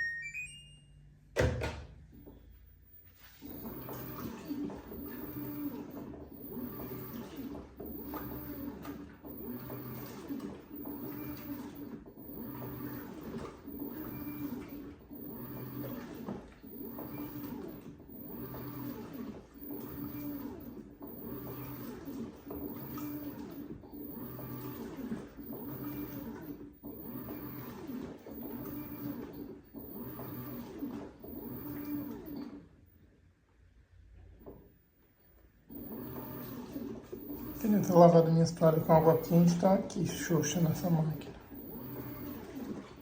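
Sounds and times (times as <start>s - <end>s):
washing machine motor humming: 0.0s - 43.0s
water churning: 36.0s - 43.0s.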